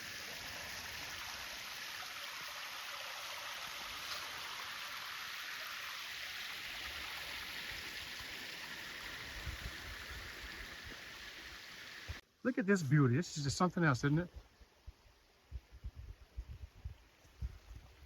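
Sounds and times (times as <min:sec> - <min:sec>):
mountain stream rushing: 0:00.0 - 0:12.2
soft low thumps: 0:14.4 - 0:17.8.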